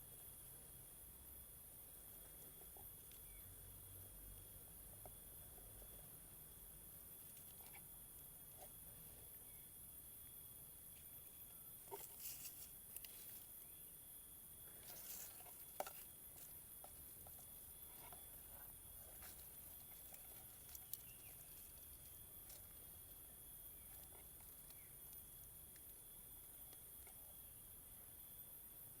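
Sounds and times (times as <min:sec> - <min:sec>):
high insect trill: 0:00.0 - 0:29.0
soft rustles and clicks: 0:11.9 - 0:13.7.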